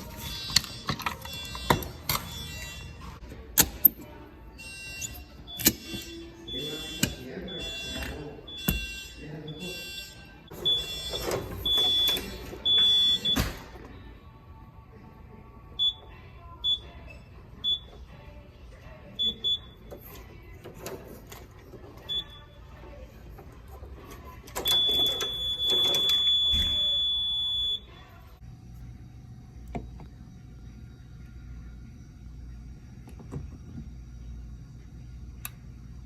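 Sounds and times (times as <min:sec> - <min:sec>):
fire alarm horn: 0:04.6 - 0:13.5, 0:24.6 - 0:27.8.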